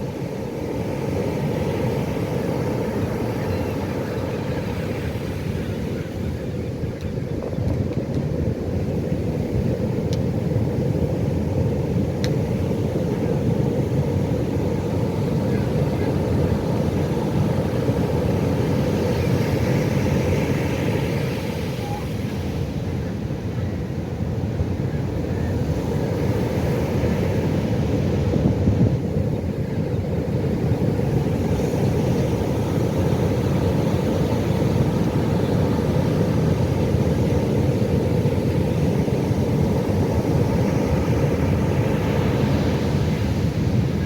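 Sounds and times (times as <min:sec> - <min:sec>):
ocean waves rumbling: 0:00.0 - 0:44.0.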